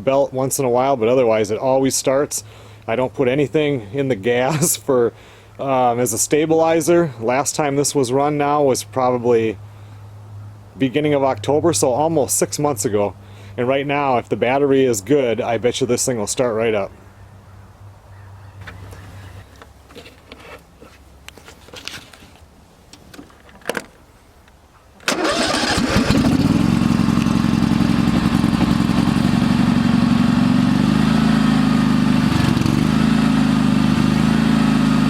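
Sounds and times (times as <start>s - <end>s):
faint clicks and handling noises: 18.6s - 24.6s
riding lawn mower engine idling: 25.0s - 35.0s.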